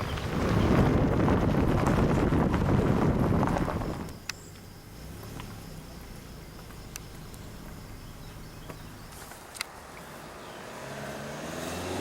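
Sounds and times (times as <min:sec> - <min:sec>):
faint insect chirping: 0:02.0 - 0:11.5.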